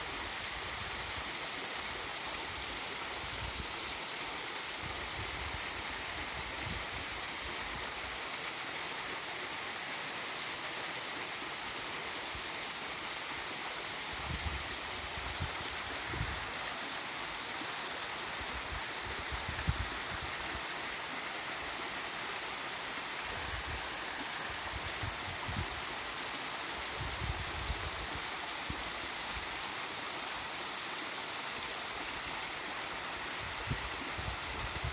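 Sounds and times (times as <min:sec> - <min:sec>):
waterfall and river rushing: 0:00.0 - 0:34.9.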